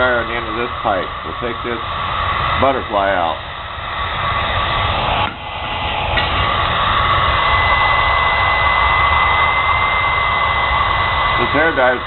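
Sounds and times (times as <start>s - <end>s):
hair dryer blowing air: 0.0s - 12.0s
high whine: 0.0s - 12.0s.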